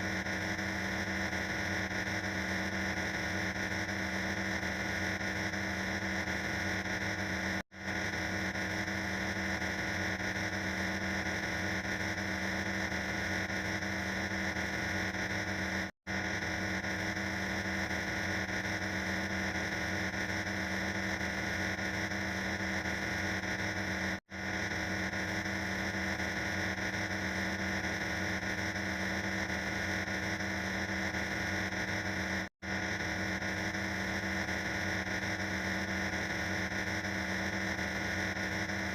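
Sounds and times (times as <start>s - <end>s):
harsh steady noise: 0.0s - 38.9s.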